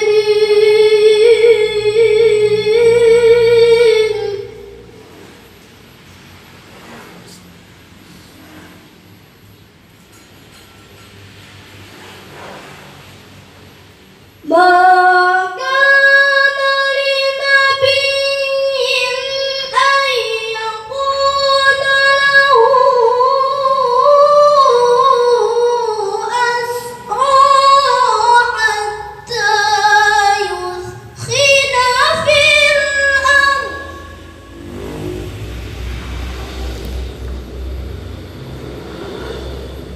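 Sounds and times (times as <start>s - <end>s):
child reciting melodically: 0.0s - 4.9s, 14.4s - 34.6s.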